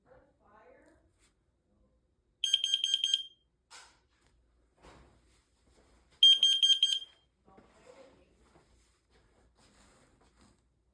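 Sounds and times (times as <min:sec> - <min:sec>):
smoke alarm beeping: 0:02.4 - 0:03.4, 0:06.2 - 0:07.2.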